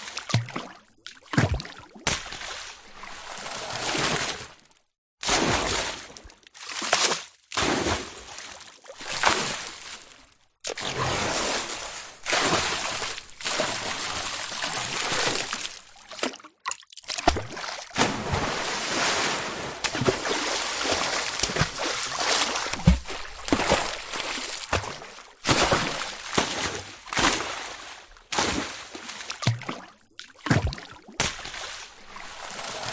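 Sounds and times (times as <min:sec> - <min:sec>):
water splashing: 0:09.0 - 0:32.9.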